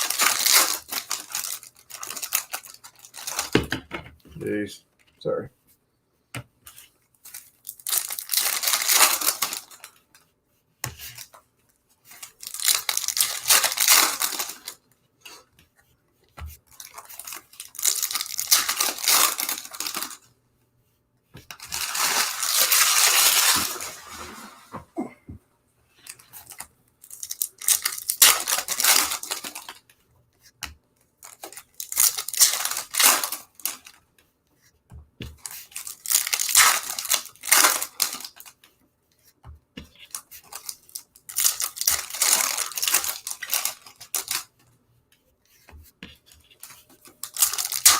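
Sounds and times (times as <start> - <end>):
foil wrappers tearing and crinkling: 0.0 - 3.6, 7.3 - 10.0, 12.1 - 14.8, 16.7 - 20.2, 21.5 - 24.7, 26.1 - 29.8, 31.2 - 34.0, 35.4 - 38.6, 40.1 - 44.5, 46.5 - 47.9.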